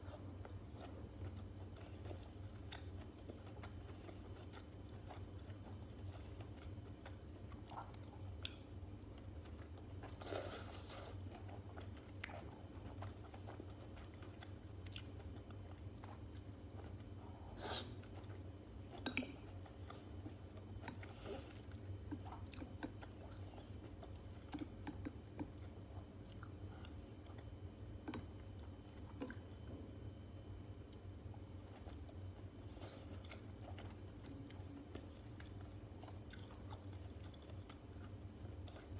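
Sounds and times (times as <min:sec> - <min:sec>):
chewing with crunches: 0:00.0 - 0:38.9
steady low hum: 0:00.0 - 0:38.9.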